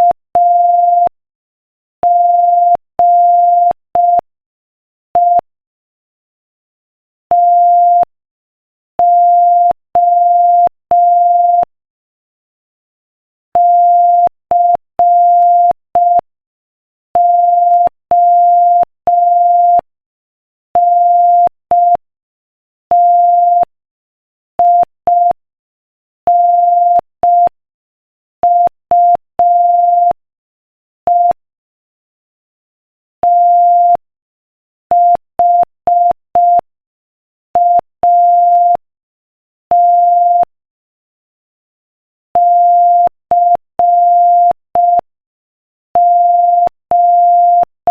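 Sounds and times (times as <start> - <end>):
morse code beeps: 13.6 - 16.2, 17.2 - 19.8, 20.8 - 22.0, 22.9 - 23.7, 26.3 - 27.5, 28.4 - 30.2, 31.1 - 31.4, 33.2 - 34.0, 34.9 - 36.7, 37.6 - 38.8, 39.7 - 40.5, 42.4 - 45.1, 46.0 - 47.9.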